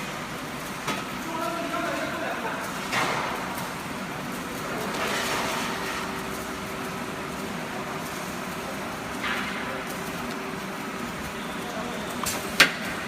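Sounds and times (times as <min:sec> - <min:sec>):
welding machine hum: 0:00.0 - 0:13.0.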